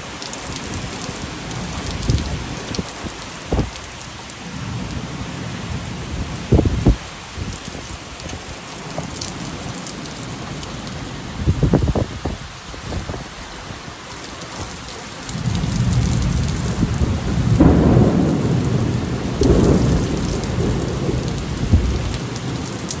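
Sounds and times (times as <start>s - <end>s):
heavy rain falling: 0.0s - 23.0s
thunder rumbling: 0.0s - 23.0s.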